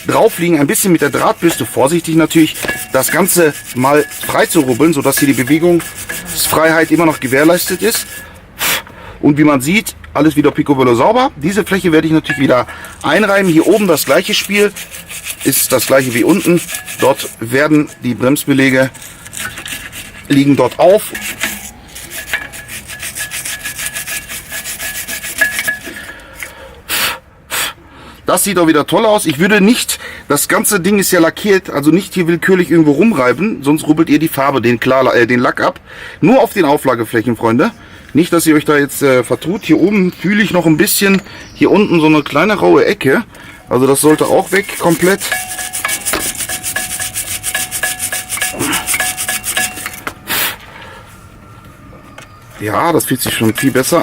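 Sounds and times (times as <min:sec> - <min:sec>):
wire brush scrubbing metal: 0:00.0 - 0:08.3, 0:11.6 - 0:26.5, 0:43.7 - 0:50.6, 0:52.9 - 0:54.0
loud scrape: 0:00.0 - 0:08.8, 0:12.3 - 0:26.1, 0:44.0 - 0:50.6.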